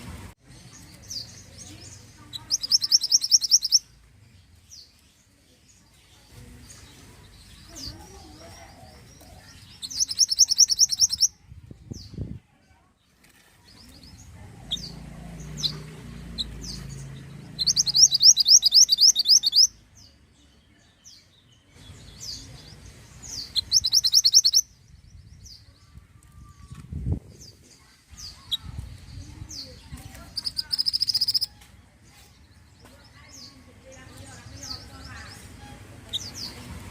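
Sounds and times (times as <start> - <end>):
bird chirping rapidly: 0.8 - 4.0, 9.6 - 11.4, 14.1 - 20.2, 21.9 - 25.7, 28.2 - 31.6, 34.4 - 36.6.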